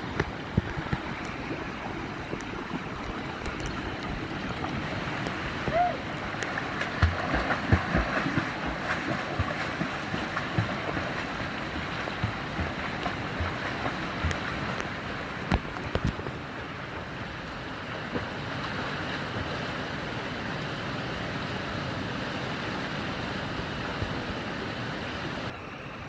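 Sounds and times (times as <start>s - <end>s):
low thuds of wind buffeting: 0.0s - 16.5s
stream rushing over rocks: 0.0s - 26.0s.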